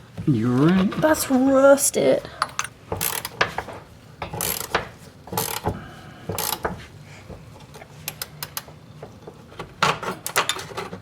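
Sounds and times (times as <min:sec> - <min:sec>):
ratchet wrench clicking: 0:02.6 - 0:03.4, 0:04.3 - 0:05.7, 0:06.3 - 0:06.7
ratchet wrench scraping: 0:02.6 - 0:03.6, 0:04.2 - 0:06.7.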